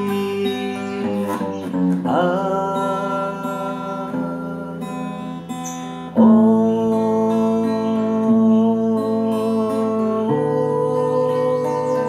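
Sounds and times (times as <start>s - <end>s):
slow acoustic guitar music: 0.0s - 12.0s.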